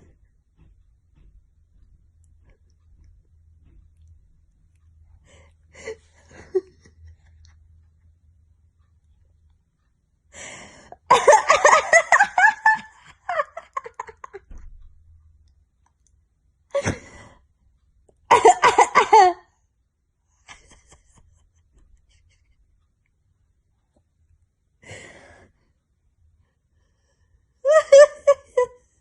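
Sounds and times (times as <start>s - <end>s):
person coughing: 18.3s - 19.4s.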